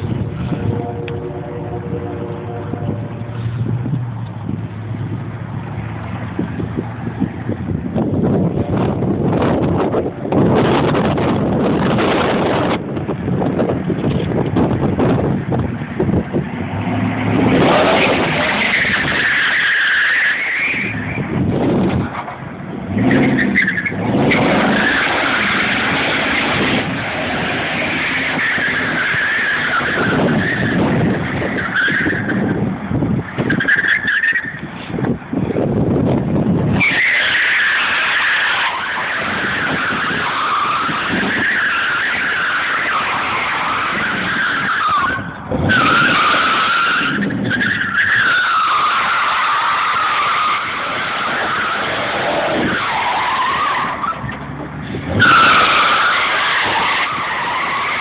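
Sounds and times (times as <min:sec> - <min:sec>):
tyres squealing on pavement: 0:16.0 - 0:35.4, 0:36.7 - 0:58.0.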